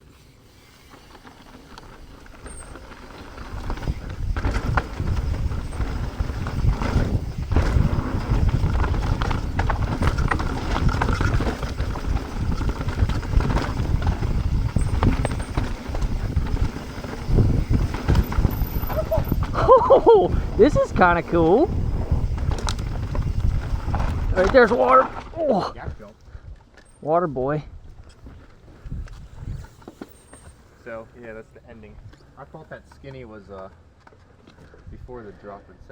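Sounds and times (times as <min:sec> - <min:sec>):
bike clattering over rocks: 0:01.0 - 0:25.5
wind rumbling over microphone: 0:03.3 - 0:26.6, 0:27.7 - 0:29.8.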